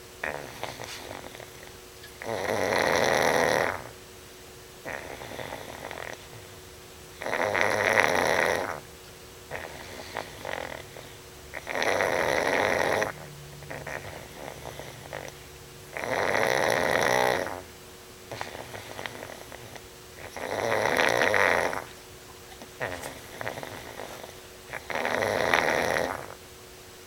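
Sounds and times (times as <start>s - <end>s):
dog snuffling breaths: 0.2s - 3.9s, 4.8s - 6.4s, 9.5s - 15.4s, 18.3s - 26.4s
dog snoring loudly: 0.2s - 4.0s, 4.8s - 6.5s, 7.2s - 26.4s.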